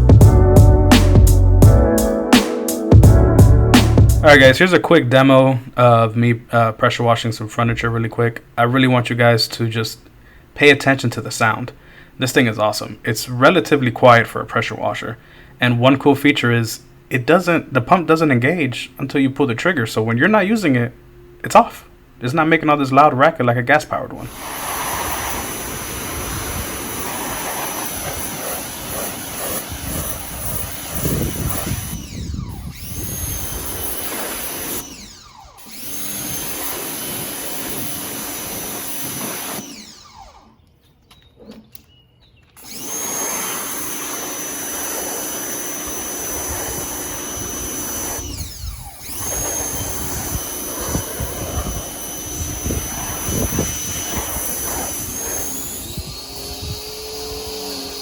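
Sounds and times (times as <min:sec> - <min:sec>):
pressure washer spraying: 0:24.3 - 0:34.9, 0:35.6 - 0:39.8, 0:42.6 - 0:58.0.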